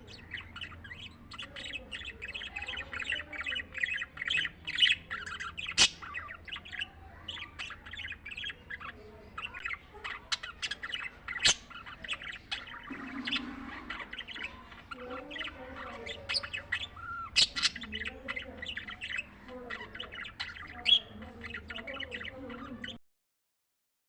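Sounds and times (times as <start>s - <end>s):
budgie squawks: 0.0s - 23.0s
budgies chirping and chattering: 0.0s - 23.0s.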